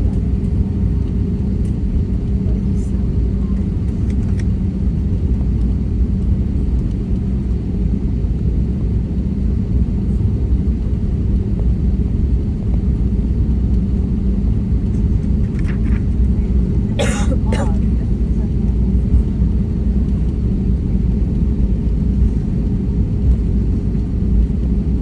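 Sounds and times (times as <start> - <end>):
airliner engine rumble: 0.0 - 25.0.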